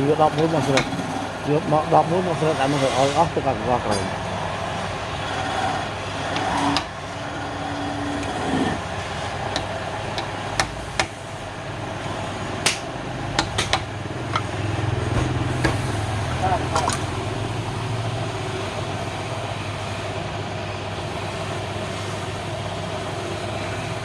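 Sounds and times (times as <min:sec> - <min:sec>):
low mechanical hum: 0:00.0 - 0:24.0
sharp knocks and taps: 0:13.4 - 0:14.5.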